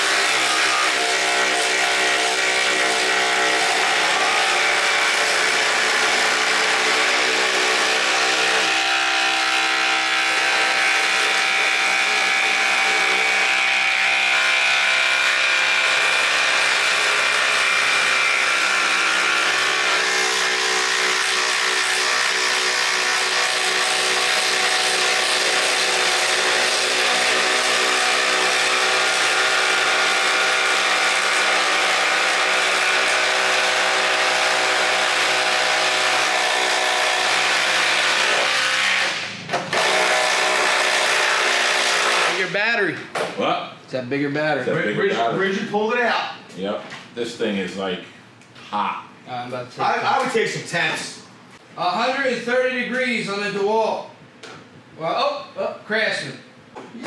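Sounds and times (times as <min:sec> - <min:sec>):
rattling buzz: 0:00.0 - 0:42.5
impact drivers hammering: 0:17.0 - 0:42.4.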